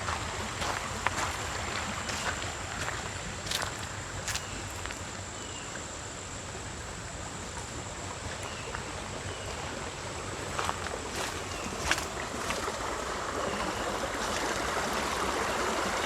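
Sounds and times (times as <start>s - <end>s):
footsteps crunching on gravel: 0.0s - 5.2s, 10.4s - 12.8s
steady outdoor hiss: 0.0s - 16.0s.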